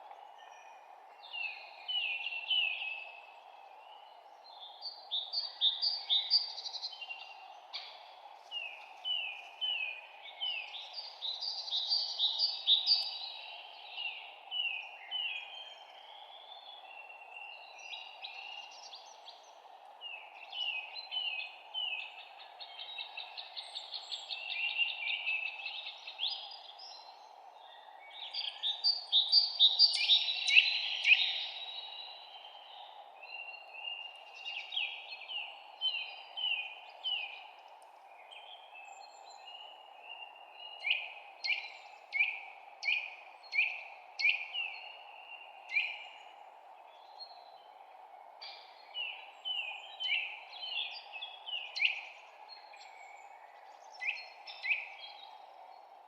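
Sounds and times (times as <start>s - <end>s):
faint background hiss: 0.0s - 56.0s
songbirds singing: 0.0s - 56.0s.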